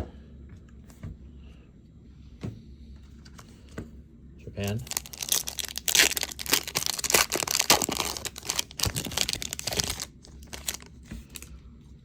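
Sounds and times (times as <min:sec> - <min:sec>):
wrapper crinkling and tearing: 0:04.7 - 0:11.5.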